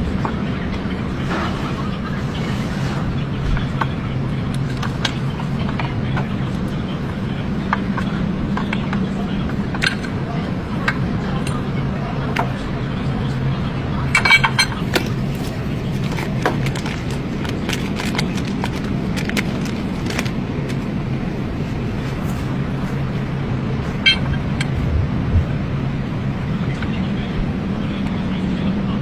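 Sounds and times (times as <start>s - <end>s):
vehicle engine humming: 12.0s - 28.4s.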